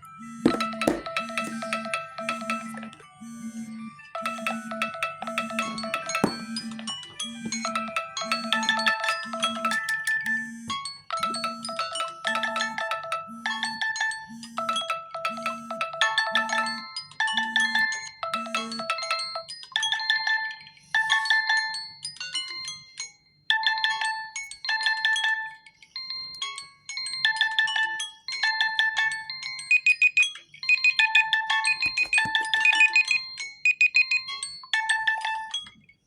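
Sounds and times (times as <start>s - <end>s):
phone alarm melody: 0.0s - 21.6s, 29.2s - 35.6s.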